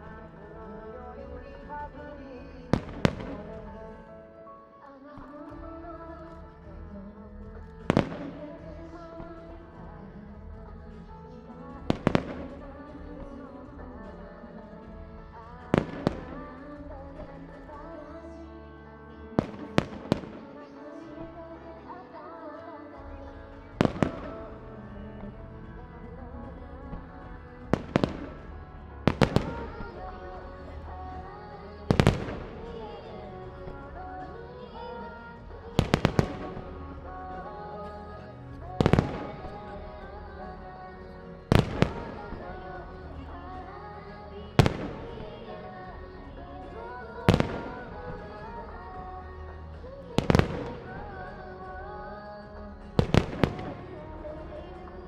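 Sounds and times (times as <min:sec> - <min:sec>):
pop music over loudspeakers: 0:00.0 - 0:55.0
firework shells cracking: 0:26.8 - 0:34.0, 0:35.7 - 0:37.9, 0:38.5 - 0:40.6, 0:41.5 - 0:43.2, 0:50.2 - 0:51.1.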